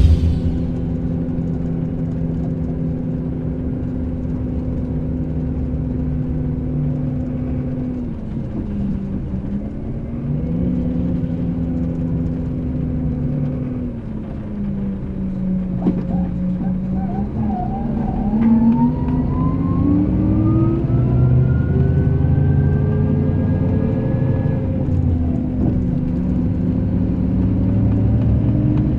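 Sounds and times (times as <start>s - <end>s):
bus engine humming: 0.0s - 2.7s.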